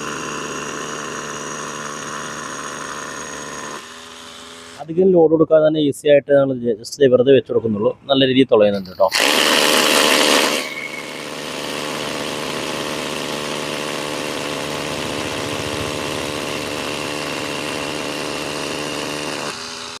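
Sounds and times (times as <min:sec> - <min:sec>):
hammer drill drilling into stone: 0:00.0 - 0:04.8, 0:09.1 - 0:20.0.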